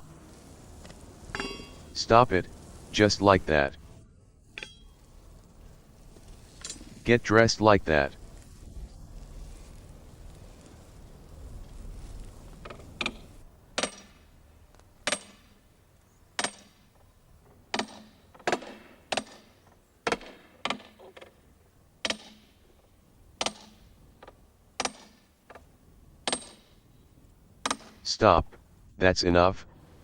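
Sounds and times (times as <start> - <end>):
hammer striking iron ring: 1.3 - 1.8, 4.6 - 5.0, 13.8 - 14.2, 15.0 - 15.5, 16.4 - 16.9, 26.3 - 26.8.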